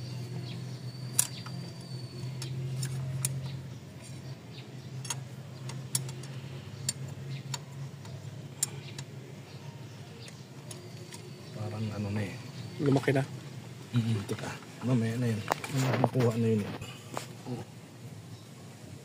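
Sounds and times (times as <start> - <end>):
steady low hum: 0.0 - 19.0
metallic clicks of hand tools: 1.1 - 1.8, 5.0 - 9.1.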